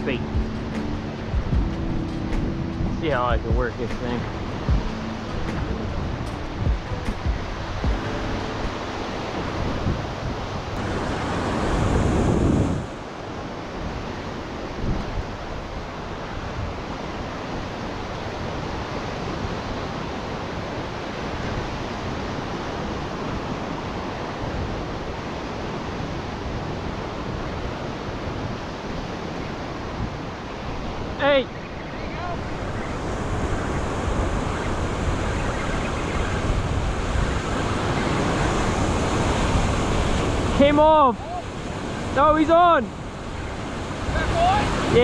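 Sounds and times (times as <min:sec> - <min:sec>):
loud rush of noise: 0:00.0 - 0:15.0
ocean surf washing: 0:00.0 - 0:45.0
wind buffeting microphone: 0:00.0 - 0:45.0.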